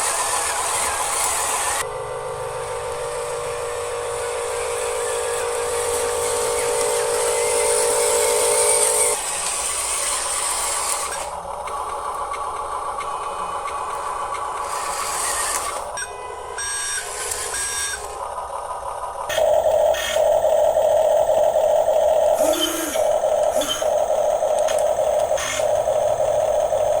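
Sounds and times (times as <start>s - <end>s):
synthetic electronic tones: 19.3s - 27.0s.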